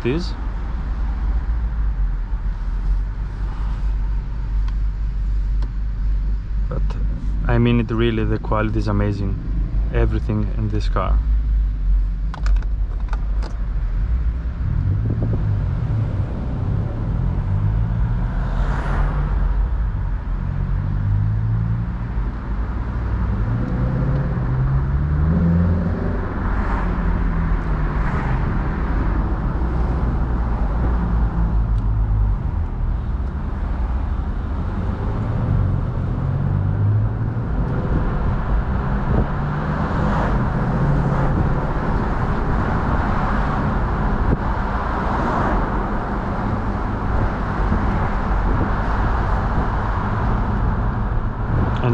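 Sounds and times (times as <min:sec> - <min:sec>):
road and wind noise: 0:00.0 - 0:51.9
car engine accelerating: 0:12.3 - 0:51.9.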